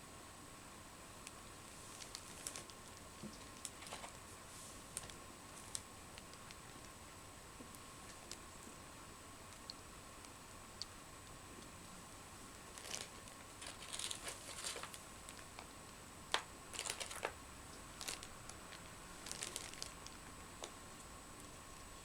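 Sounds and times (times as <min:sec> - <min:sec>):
seashells rustling and clicking: 0:12.5 - 0:15.7, 0:16.3 - 0:17.4, 0:18.0 - 0:20.8.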